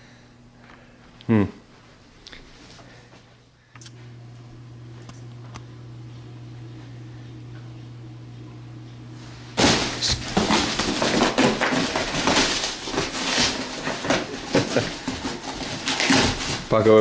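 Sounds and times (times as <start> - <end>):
low hum: 3.8 - 10.4
wrapping paper tearing: 9.6 - 17.0.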